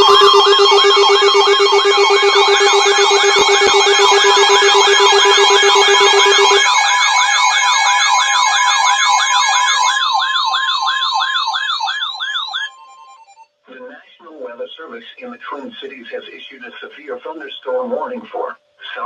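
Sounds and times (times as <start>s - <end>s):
electronic siren alert tone: 0.0s - 13.5s.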